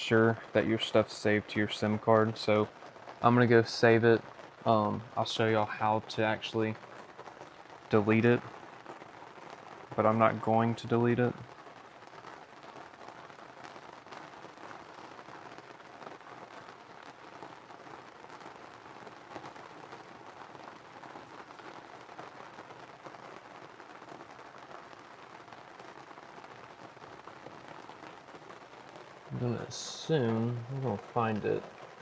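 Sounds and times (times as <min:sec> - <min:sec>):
low background hiss: 0:00.0 - 0:14.4, 0:22.9 - 0:32.0.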